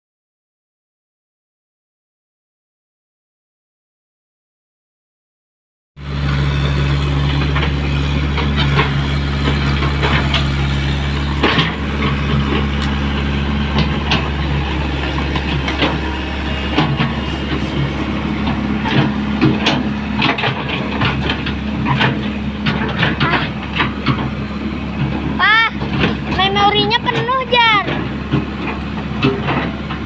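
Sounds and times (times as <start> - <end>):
excavator diesel engine idling: 6.0 - 30.0.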